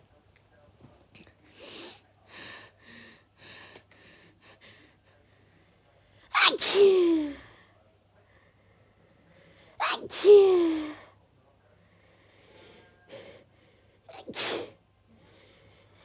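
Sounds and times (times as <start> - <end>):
soft breathy noises: 0.5 - 6.3, 7.0 - 9.8, 10.5 - 16.0
person sneezing: 6.3 - 7.4, 9.8 - 11.0, 14.1 - 14.8.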